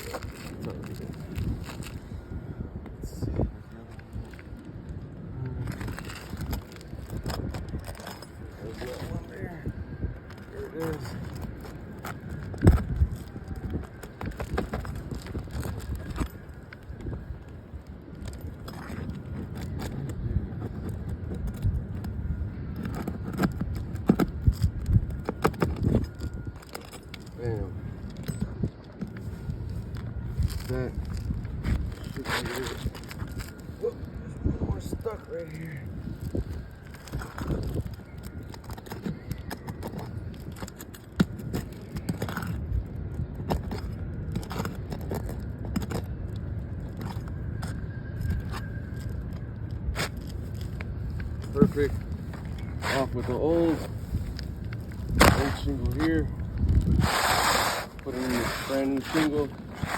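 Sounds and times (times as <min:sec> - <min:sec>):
steady low rumble: 0:00.0 - 0:59.9
pry tool scraping shingle: 0:51.4 - 0:54.4, 0:55.0 - 0:59.9.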